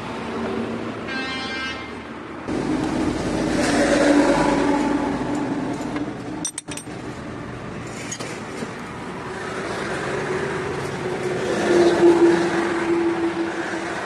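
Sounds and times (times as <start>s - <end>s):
car engine and road noise: 0.0s - 14.0s.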